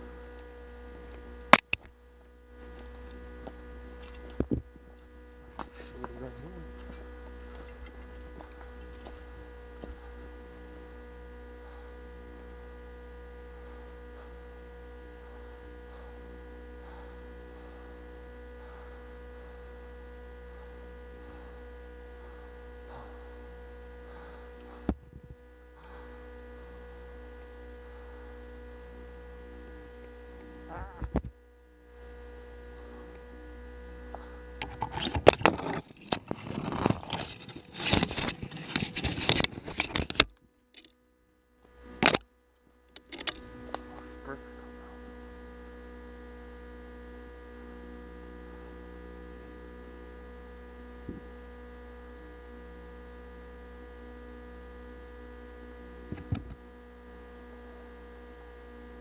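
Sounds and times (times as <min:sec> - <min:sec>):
electrical hum: 0:00.0 - 0:59.0
loud rustling and scraping: 0:34.6 - 0:40.9.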